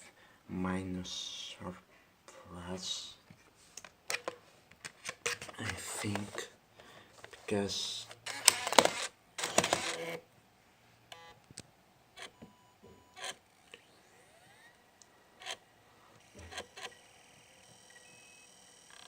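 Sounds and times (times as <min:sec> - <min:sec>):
disc handling noise: 0:03.8 - 0:06.5, 0:08.1 - 0:10.1
drive spinning up whine: 0:13.1 - 0:19.0.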